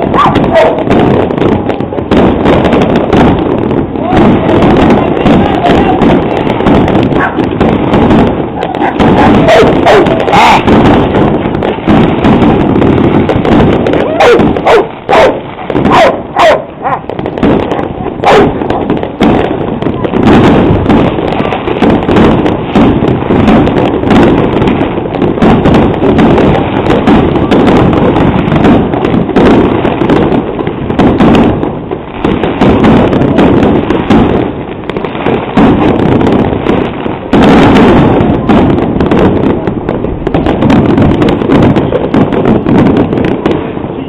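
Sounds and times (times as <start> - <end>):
firecrackers and fireworks crackling: 0.0 - 44.0.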